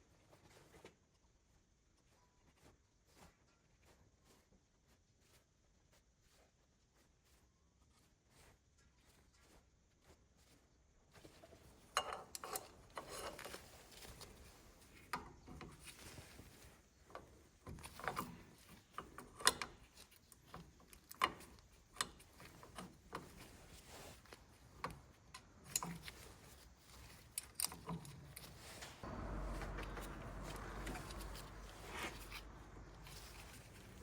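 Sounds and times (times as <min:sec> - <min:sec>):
tools and metal parts clinking: 0:11.8 - 0:34.0.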